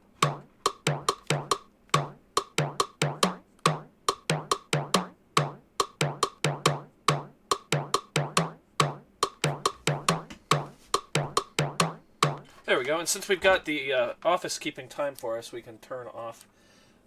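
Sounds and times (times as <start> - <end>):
drum machine beat: 0.0 - 12.5.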